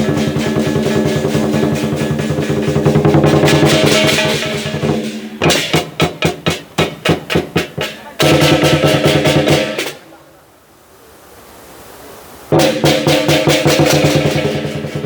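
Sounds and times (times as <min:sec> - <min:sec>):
gong: 0:00.0 - 0:05.7
big drum beating: 0:00.0 - 0:10.2, 0:12.5 - 0:15.0
cymbals clashing: 0:00.0 - 0:10.2, 0:12.5 - 0:15.0.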